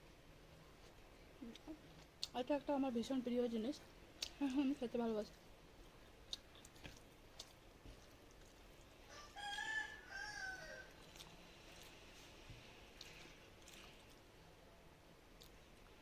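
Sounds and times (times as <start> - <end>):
soft wet clicks: 1.5 - 2.4, 4.2 - 4.6
person chewing food: 5.8 - 9.0, 10.8 - 14.3, 15.3 - 16.0
rooster crowing: 9.1 - 11.0.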